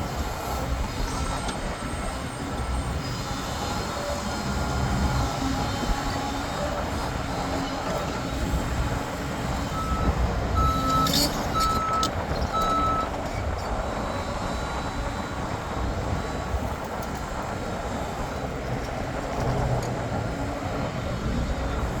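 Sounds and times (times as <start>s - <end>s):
diesel engines running: 0.0s - 22.0s
reversing alarm beeping: 9.3s - 13.2s.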